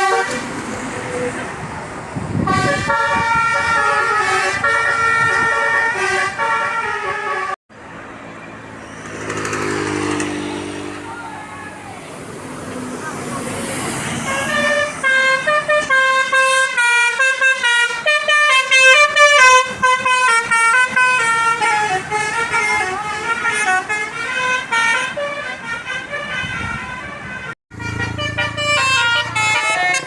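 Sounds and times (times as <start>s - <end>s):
bus horn playing melody: 0.0s - 0.6s, 2.3s - 7.6s, 13.9s - 30.0s.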